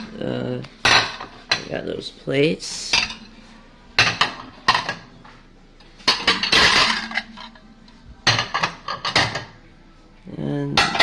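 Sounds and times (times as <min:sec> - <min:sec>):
ceramic plates clinking: 0:00.8 - 0:01.8, 0:02.9 - 0:05.2, 0:05.8 - 0:09.6, 0:10.7 - 0:11.0.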